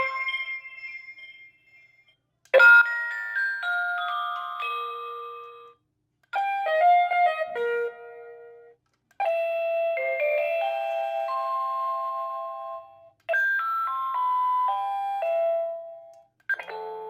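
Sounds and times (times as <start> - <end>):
electronic doorbell chime tunes: 0.0 - 5.8, 9.3 - 17.0.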